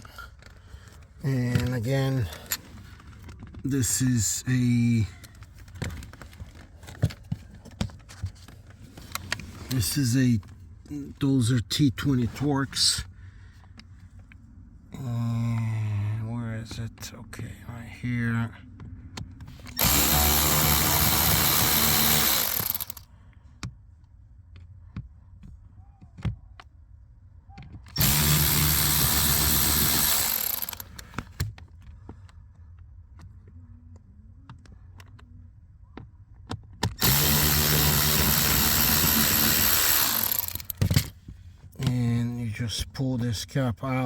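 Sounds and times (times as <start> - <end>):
cordless power driver running: 19.6 - 23.0, 27.9 - 31.4, 36.9 - 41.1.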